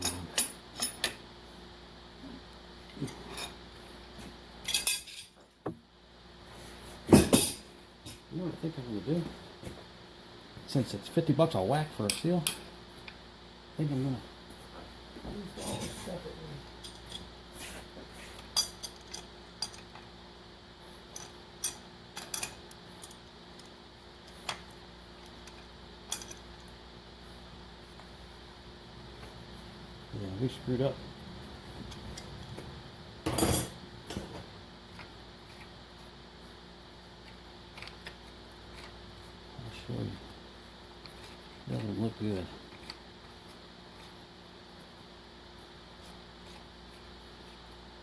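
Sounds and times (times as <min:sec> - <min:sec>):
metal tools clinking: 0:00.0 - 0:01.2, 0:04.6 - 0:05.4.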